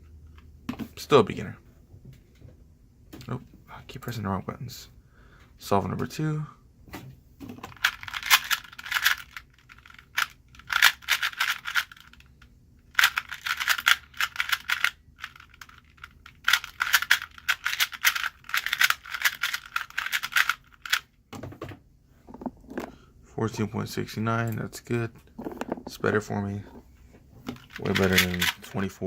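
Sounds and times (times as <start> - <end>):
speed cube turns clicking: 7.7 - 12.3, 12.9 - 21.0.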